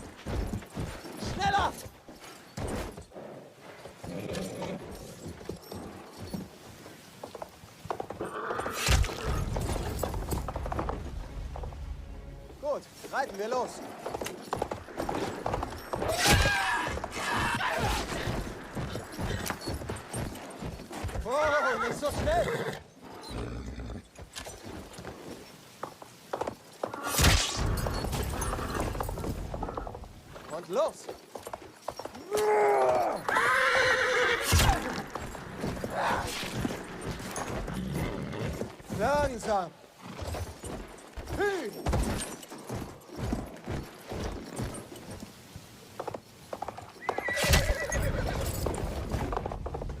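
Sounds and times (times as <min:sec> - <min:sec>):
horse hooves clip-clopping: 0:00.0 - 0:50.0
horse whinnying: 0:04.0 - 0:05.2, 0:08.2 - 0:10.0, 0:15.2 - 0:19.8, 0:21.2 - 0:24.2, 0:32.2 - 0:38.6, 0:46.9 - 0:49.0.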